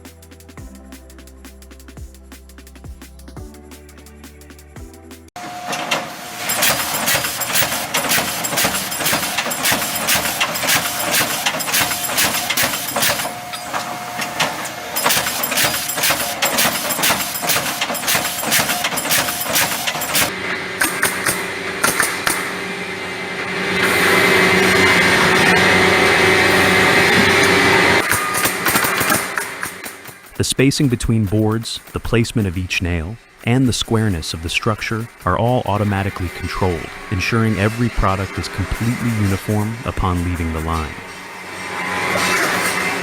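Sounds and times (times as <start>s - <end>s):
steady machine noise: 4.8s - 43.0s
nail guns firing in clatter: 6.4s - 13.4s, 15.0s - 22.5s, 28.0s - 30.2s.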